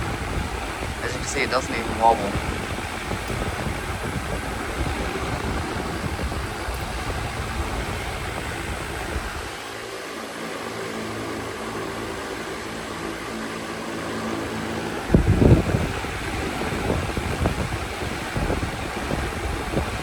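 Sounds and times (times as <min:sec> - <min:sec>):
heavy low rumble: 0:00.0 - 0:09.8, 0:14.5 - 0:20.0
ceiling fan air whoosh: 0:00.0 - 0:20.0
fan motor hum: 0:00.0 - 0:20.0.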